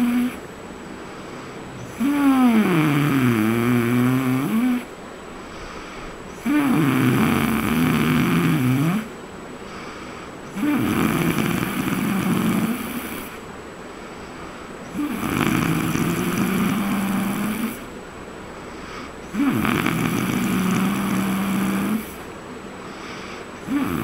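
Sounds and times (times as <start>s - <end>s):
man snoring loudly: 0.0s - 0.4s, 1.8s - 4.9s, 6.4s - 9.1s, 10.5s - 13.4s, 14.9s - 17.9s, 19.3s - 22.3s, 23.6s - 24.0s
quiet breaths: 0.0s - 24.0s.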